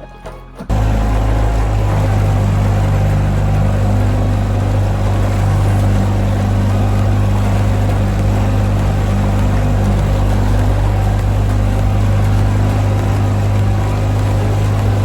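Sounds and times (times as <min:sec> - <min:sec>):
engine running with deep hum: 0:00.7 - 0:15.0.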